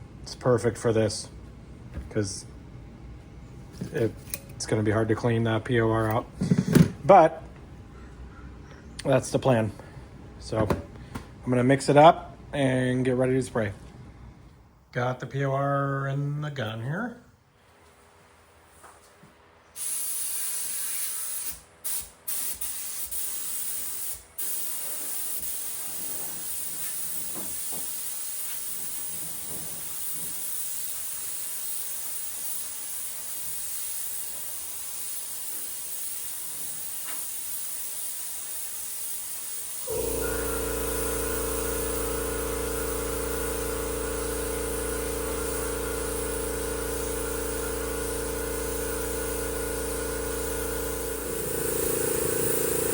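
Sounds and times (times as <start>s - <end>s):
spray gun hissing: 19.8s - 52.9s
machine drone with low hum: 39.9s - 52.9s.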